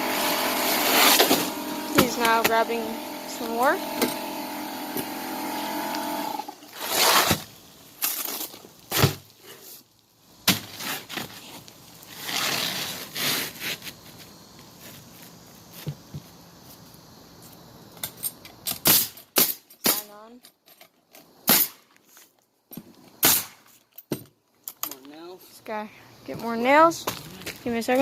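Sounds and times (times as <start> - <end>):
steady hum: 0.0 - 6.6
rustling and scraping: 10.5 - 18.6.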